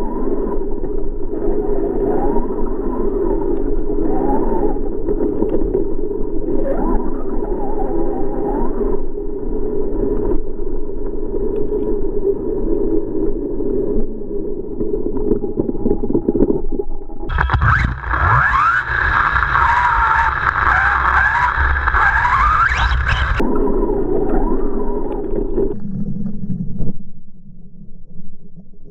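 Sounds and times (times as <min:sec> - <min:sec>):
low scratchy rumble: 0:08.8 - 0:28.9
electric motor whining: 0:17.3 - 0:23.4.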